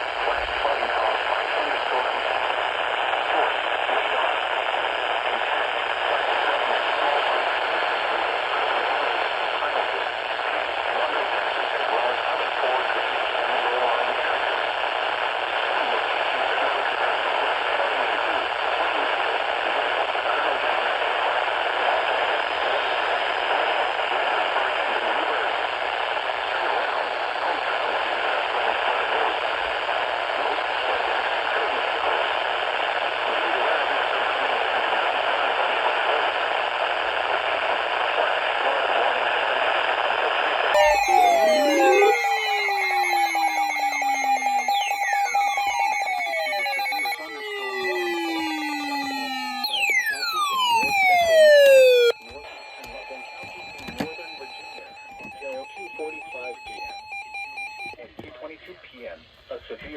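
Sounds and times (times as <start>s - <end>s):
radio static hiss: 0.0s - 29.4s, 40.2s - 57.0s.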